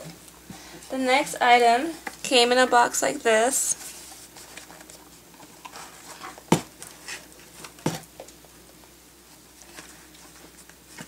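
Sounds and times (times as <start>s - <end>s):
rustling: 3.6s - 11.0s
sharp knocks on box: 6.5s - 6.7s.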